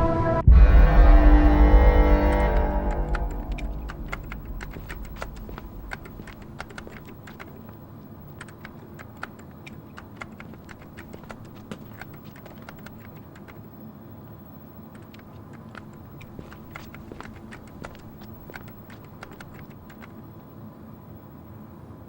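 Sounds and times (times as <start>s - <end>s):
low sustained drone: 0.0s - 6.7s.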